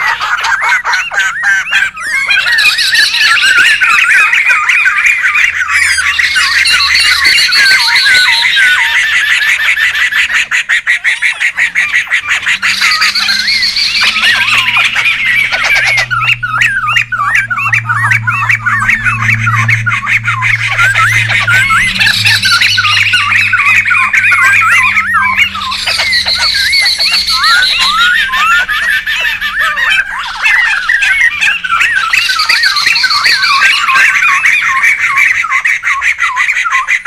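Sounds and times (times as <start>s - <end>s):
birds chattering and squawking: 0.0s - 37.0s
steady low hum: 11.4s - 35.5s.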